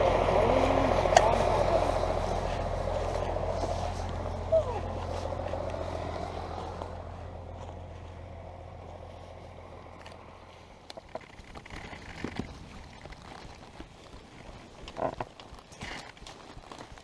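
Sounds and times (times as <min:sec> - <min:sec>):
vehicle engine humming: 0:00.0 - 0:13.2.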